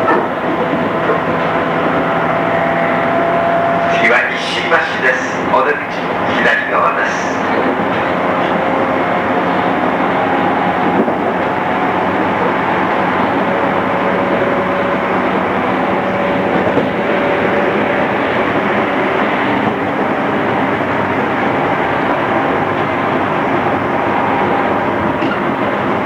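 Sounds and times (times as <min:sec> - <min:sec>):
faint steady whine: 0:00.0 - 0:14.4
train wheels rumbling on track: 0:00.0 - 0:26.0.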